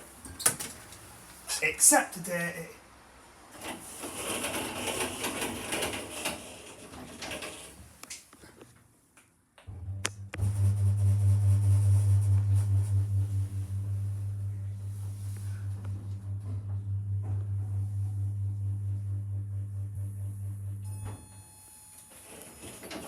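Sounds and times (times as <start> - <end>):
lift motor humming: 9.7 - 21.4.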